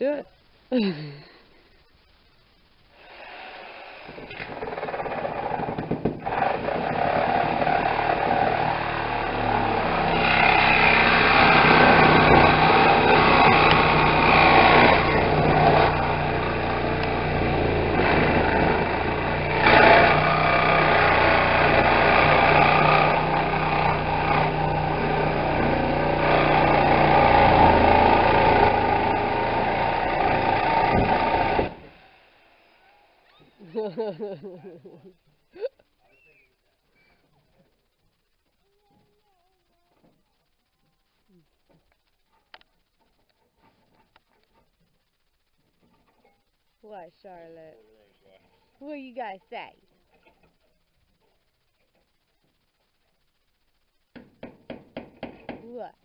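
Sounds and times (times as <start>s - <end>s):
power tool cutting sheet metal: 3.0s - 32.2s.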